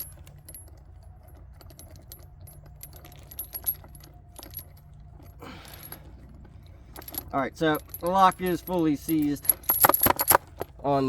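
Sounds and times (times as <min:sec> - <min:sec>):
keys jangling: 0:00.0 - 0:10.8.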